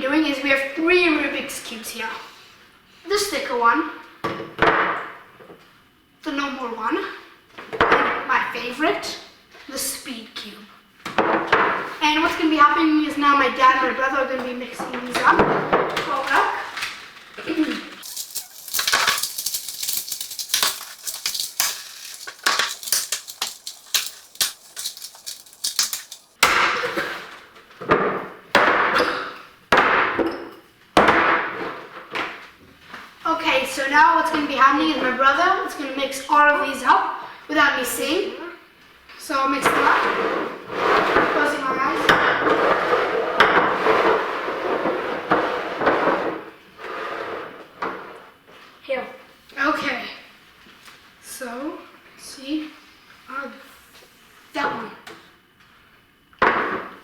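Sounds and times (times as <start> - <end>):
plastic puzzle cubes clicking: 18.0 - 26.4.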